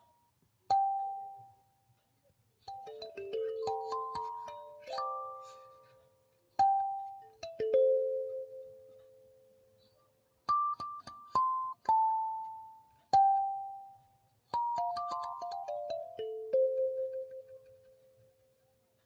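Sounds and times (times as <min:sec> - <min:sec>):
slow keyboard melody: 0:02.8 - 0:09.8.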